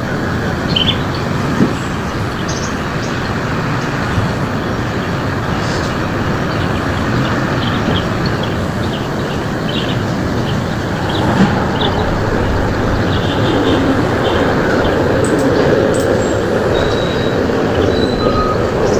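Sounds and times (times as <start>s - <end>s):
steady rushing rumble: 6.0s - 16.8s.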